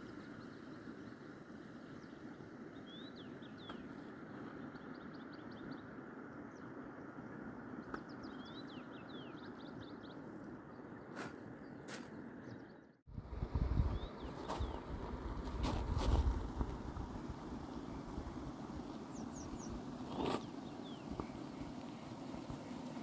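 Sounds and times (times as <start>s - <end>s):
small bird singing: 2.8s - 7.2s, 7.8s - 15.0s, 18.8s - 21.5s.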